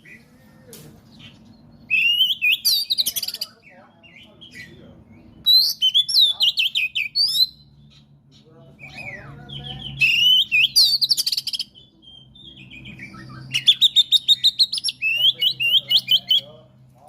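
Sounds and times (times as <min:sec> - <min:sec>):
bird singing whistles and chatter: 0:01.9 - 0:04.8, 0:05.4 - 0:08.1, 0:08.8 - 0:16.5.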